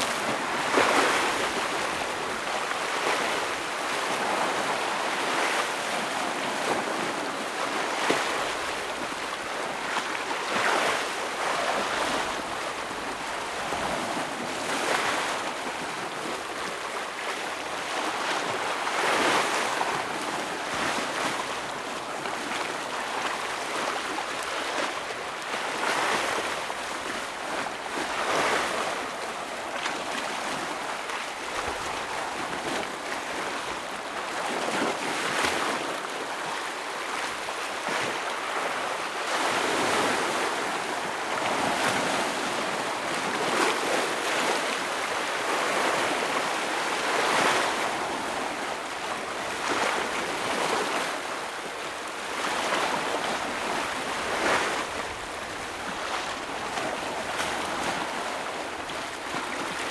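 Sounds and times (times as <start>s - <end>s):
ocean waves breaking on rocks: 0.0s - 17.2s.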